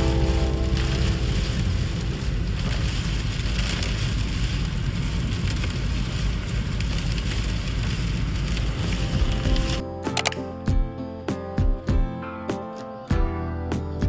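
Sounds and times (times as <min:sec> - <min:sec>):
steady rushing noise: 0:00.0 - 0:09.8
deep low rumble: 0:00.0 - 0:09.9.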